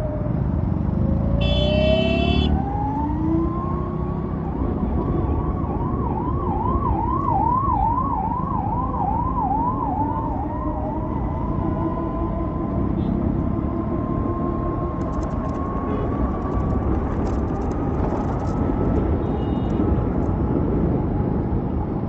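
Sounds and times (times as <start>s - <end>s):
emergency vehicle siren: 0.0s - 22.0s
road and wind noise: 0.0s - 22.0s
vehicle horn honk: 1.4s - 2.6s.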